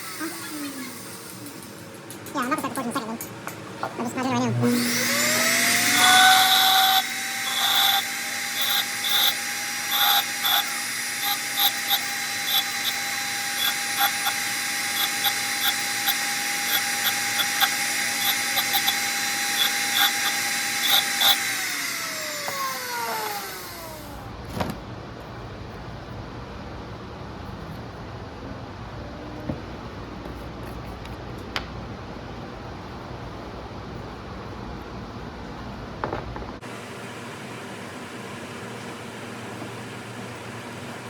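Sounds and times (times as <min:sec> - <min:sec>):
grinder winding down: 0:04.2 - 0:24.3
electric grinder running: 0:04.5 - 0:24.2.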